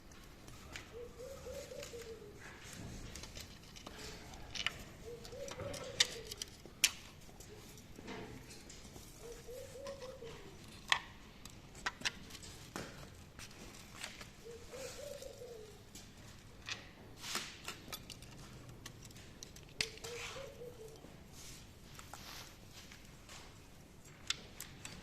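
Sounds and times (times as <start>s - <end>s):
pigeon cooing: 0.3s - 6.8s, 7.4s - 11.0s, 14.2s - 16.9s, 19.2s - 21.5s.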